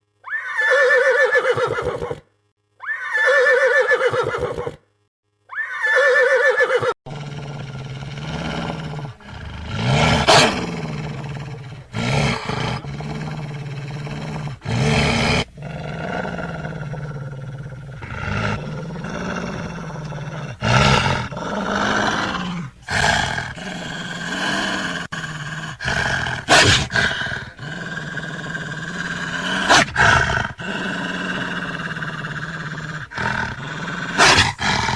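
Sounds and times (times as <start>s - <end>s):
animal calls: 0.2s - 2.2s, 2.8s - 4.8s, 5.5s - 25.0s, 33.0s - 34.9s.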